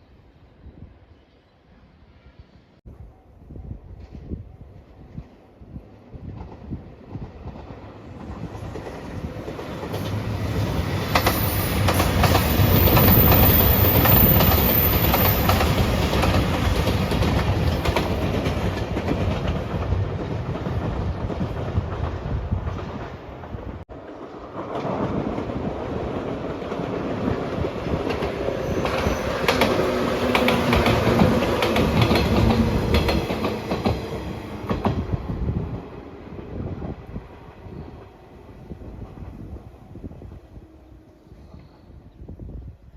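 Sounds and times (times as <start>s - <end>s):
train wheels clacking over rail joints: 7.2s - 23.1s, 26.2s - 35.1s.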